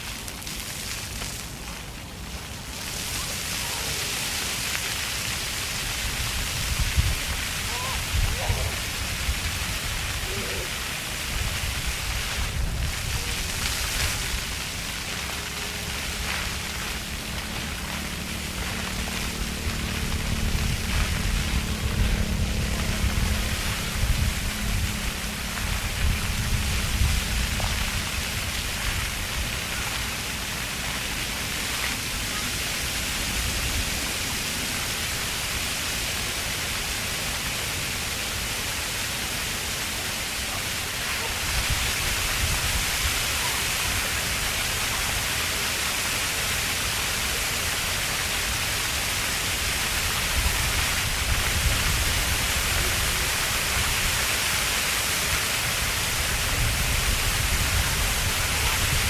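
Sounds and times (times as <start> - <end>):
fountain water splashing: 0.0 - 59.0.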